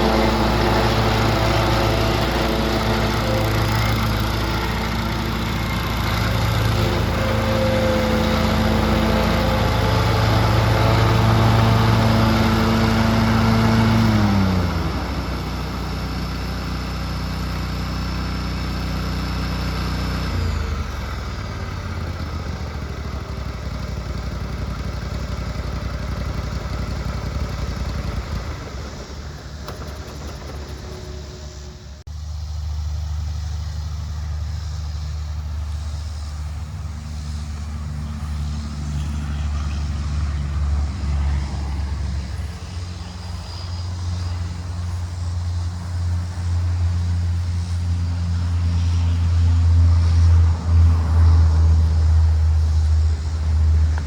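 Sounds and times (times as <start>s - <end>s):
high whine: 0.0s - 15.9s, 31.0s - 54.0s
mower engine running: 0.0s - 54.0s.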